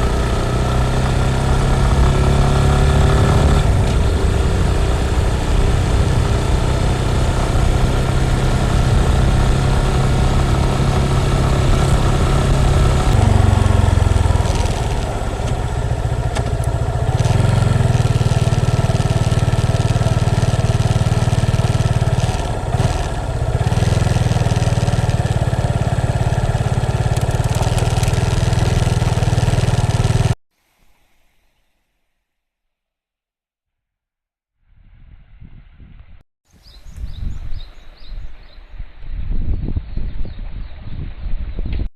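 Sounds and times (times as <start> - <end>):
motorcycle engine running: 0.0 - 30.4.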